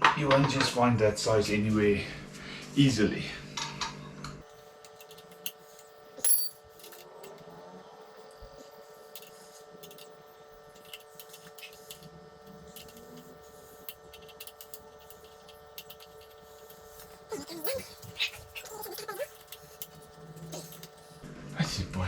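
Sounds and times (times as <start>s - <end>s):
electrical hum: 0.0s - 22.0s
metal hand tools clinking: 6.2s - 7.0s.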